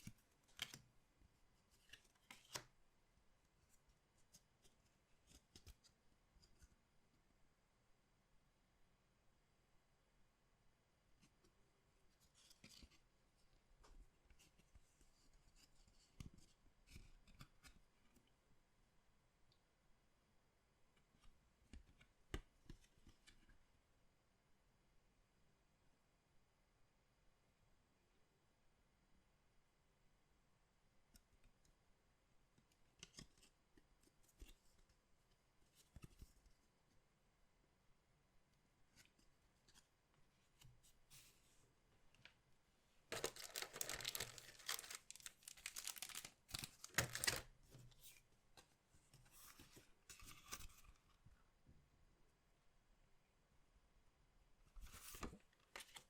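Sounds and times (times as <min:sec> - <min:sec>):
packaging rustle: 0:43.1 - 0:47.5.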